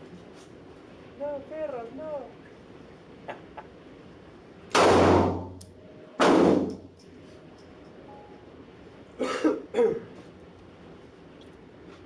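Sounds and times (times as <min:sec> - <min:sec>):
pistol shots with ringing echo: 0:04.7 - 0:06.8.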